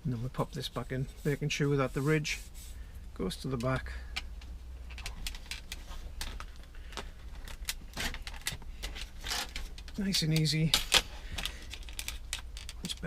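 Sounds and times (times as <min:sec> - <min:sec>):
low steady hum: 0:00.0 - 0:13.0
plastic blind parts clicking: 0:03.6 - 0:13.0.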